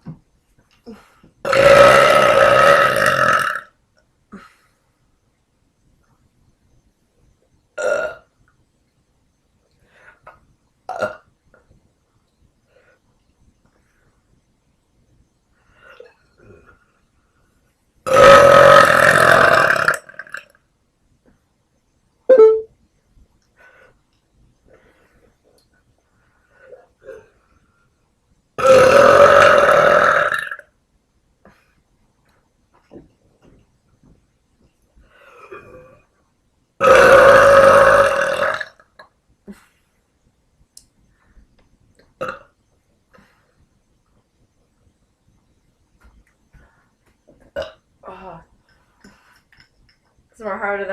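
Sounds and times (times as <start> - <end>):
woman burping loudly: 0.9 - 3.7, 10.9 - 11.2, 18.1 - 20.5, 28.6 - 30.6, 36.8 - 38.8, 42.2 - 42.5, 47.4 - 48.5
woman belching: 1.5 - 3.7, 18.1 - 20.4, 28.6 - 30.6, 36.8 - 38.8, 42.2 - 42.5.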